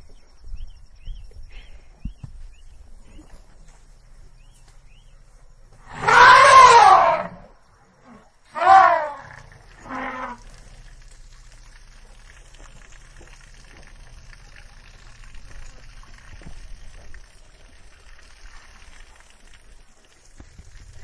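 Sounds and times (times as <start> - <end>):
elephant call: 5.9 - 7.5, 8.1 - 10.5.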